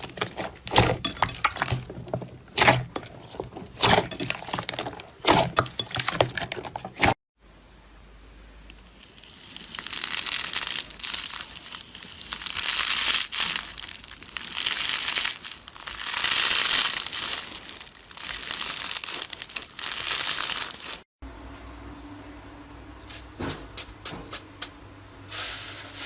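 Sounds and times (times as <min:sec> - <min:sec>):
slime squeezed by hand crackling: 0:08.8 - 0:21.0.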